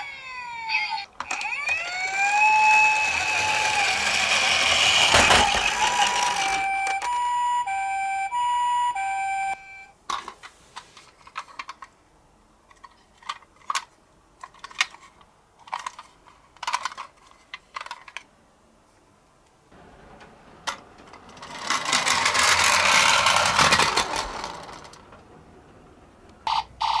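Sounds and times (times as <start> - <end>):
toy siren wailing: 1.2 - 9.9.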